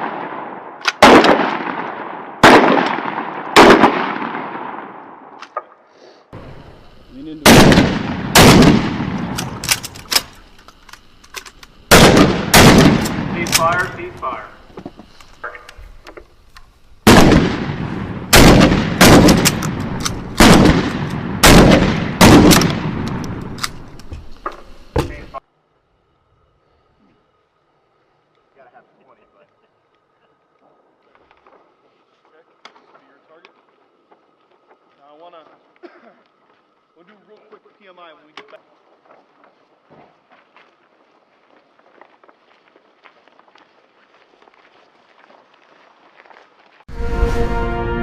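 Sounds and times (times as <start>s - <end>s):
shotgun shots with rolling echo: 0.0s - 5.4s, 7.4s - 10.3s, 11.9s - 14.5s, 17.0s - 23.9s.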